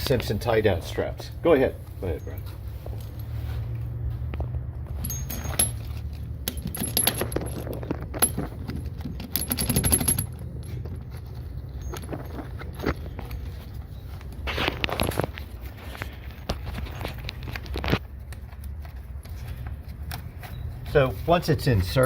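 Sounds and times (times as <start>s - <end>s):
metal clinking and rattling: 2.4s - 3.8s, 4.4s - 18.0s.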